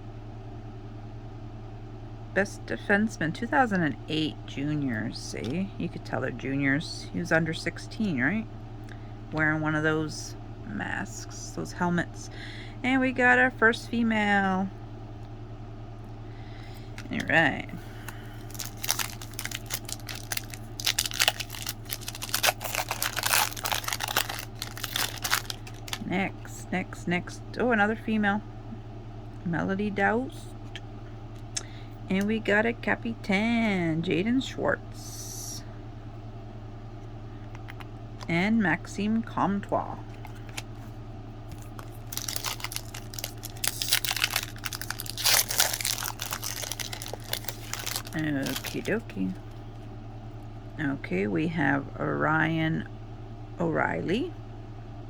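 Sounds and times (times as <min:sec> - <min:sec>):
steady low hum: 0:00.0 - 0:55.0
cards being handled: 0:18.0 - 0:26.0, 0:40.1 - 0:49.0
wrapper crinkling: 0:18.1 - 0:26.0, 0:41.5 - 0:49.6.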